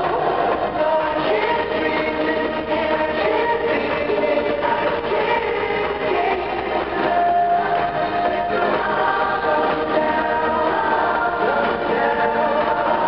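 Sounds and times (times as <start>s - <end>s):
amplified live music: 0.0s - 13.0s
group singing in harmony: 0.0s - 13.0s.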